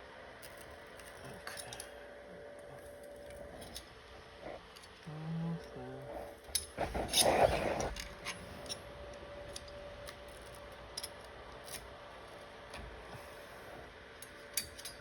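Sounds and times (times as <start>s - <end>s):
metal tools clicking and scraping: 0.4s - 2.0s, 2.8s - 3.9s, 6.4s - 8.9s, 9.5s - 11.9s, 14.2s - 15.0s.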